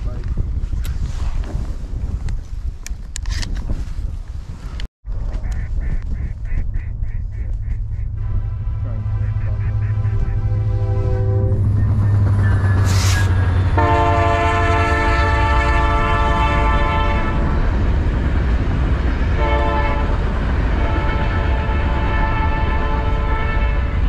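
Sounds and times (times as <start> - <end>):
steady low rumble: 4.0 - 24.0
locomotive horn blast: 8.1 - 17.7, 19.3 - 24.0.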